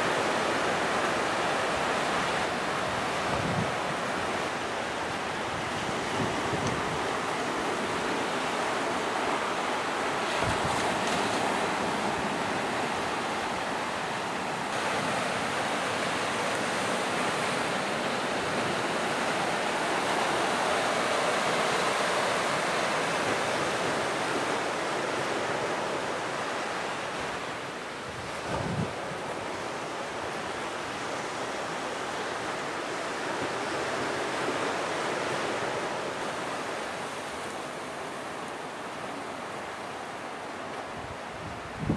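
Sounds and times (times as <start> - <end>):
surf crashing on beach: 0.0 - 41.9
wind buffeting microphone: 10.3 - 11.0, 28.0 - 29.5, 41.0 - 41.9.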